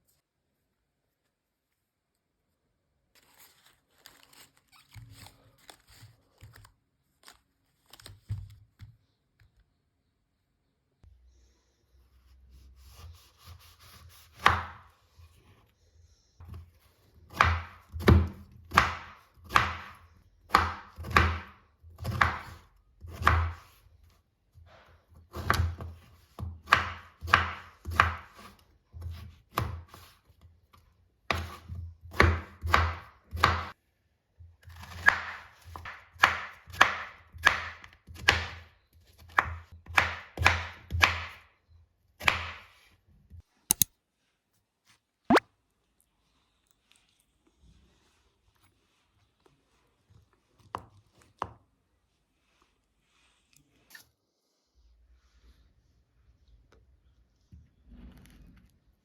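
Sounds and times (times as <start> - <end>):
knife chopping on cutting board: 13.4 - 14.9, 17.3 - 23.7, 26.6 - 28.5, 31.3 - 33.7, 34.7 - 38.6, 39.2 - 41.4, 42.2 - 42.7.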